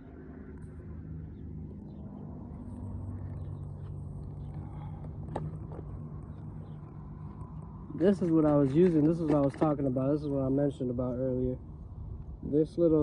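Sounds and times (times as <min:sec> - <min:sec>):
engine droning: 0:00.0 - 0:13.0.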